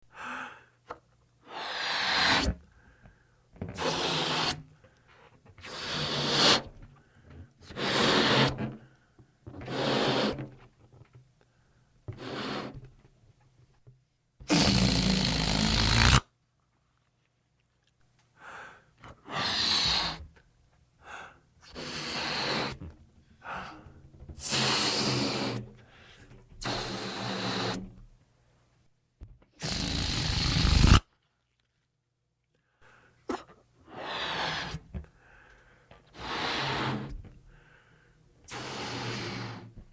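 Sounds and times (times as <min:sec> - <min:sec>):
balloon inflating air rush: 0:01.5 - 0:02.6, 0:03.8 - 0:04.7, 0:05.6 - 0:06.7, 0:07.7 - 0:08.6, 0:09.6 - 0:10.4, 0:12.2 - 0:12.8, 0:14.4 - 0:16.2, 0:19.3 - 0:20.3, 0:21.7 - 0:22.8, 0:24.4 - 0:25.7, 0:26.6 - 0:27.9, 0:29.6 - 0:31.0, 0:33.9 - 0:34.8, 0:36.2 - 0:37.1, 0:38.5 - 0:39.8.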